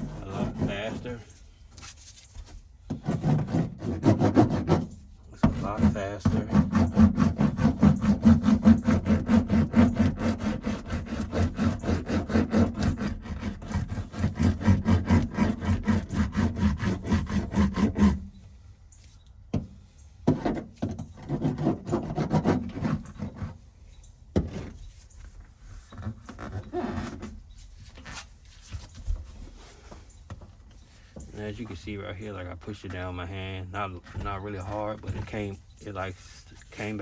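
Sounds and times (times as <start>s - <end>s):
hand roller rubbing over mat: 0.0s - 18.3s, 24.4s - 30.1s, 33.9s - 37.0s.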